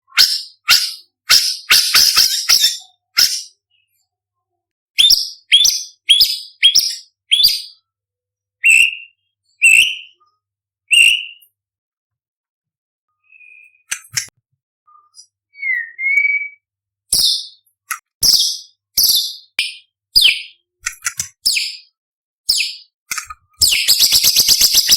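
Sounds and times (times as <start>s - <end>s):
bird singing whistled phrases: 5.0s - 7.8s, 8.6s - 10.2s, 10.9s - 11.4s, 13.2s - 13.9s, 15.0s - 17.6s, 18.2s - 20.6s, 23.6s - 24.9s.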